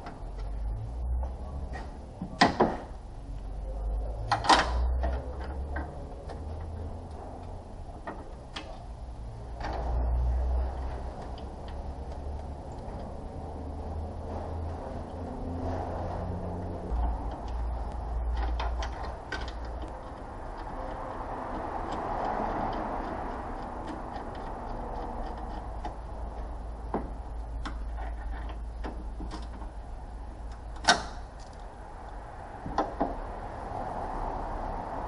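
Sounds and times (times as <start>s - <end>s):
light clicks and knocks of hand work: 9.6s - 16.1s, 16.9s - 33.3s.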